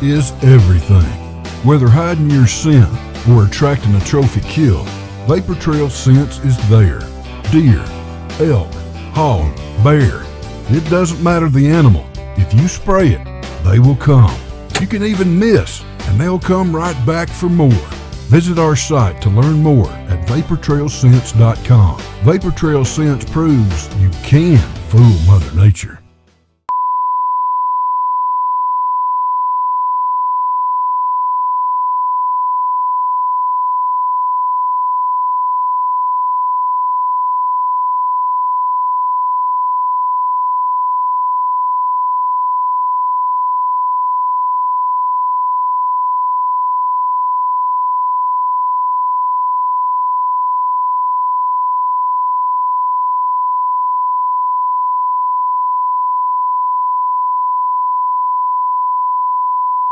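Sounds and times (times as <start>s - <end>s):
electronic test tone beep: 26.7s - 59.9s.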